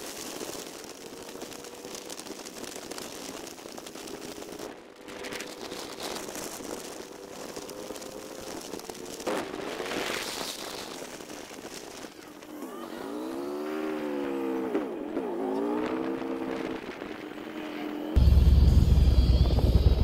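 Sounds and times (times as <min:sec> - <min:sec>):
motorcycle engine running: 0:12.2 - 0:20.0.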